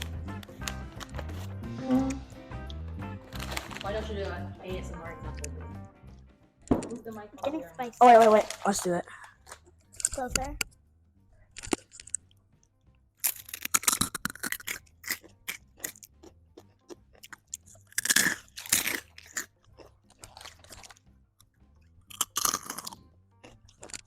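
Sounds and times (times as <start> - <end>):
chips crunching and chewing: 0.0 - 1.5, 3.3 - 3.9, 11.5 - 12.4, 13.2 - 24.0.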